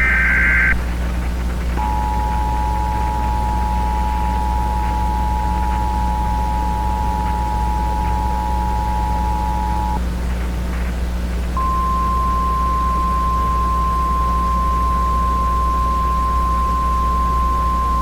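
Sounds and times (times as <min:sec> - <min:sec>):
two-note alarm tone: 0:11.6 - 0:18.0.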